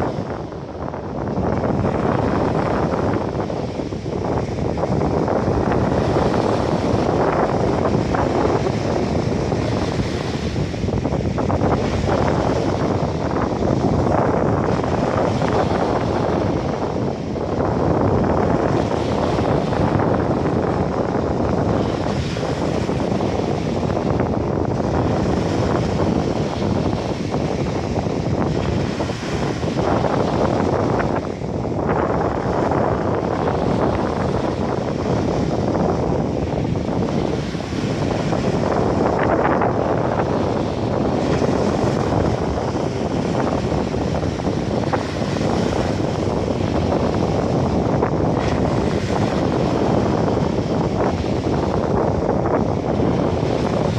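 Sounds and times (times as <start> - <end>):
small waves washing: 0.0 - 53.9
surf on beach: 0.0 - 53.9
wind buffeting microphone: 0.0 - 53.9.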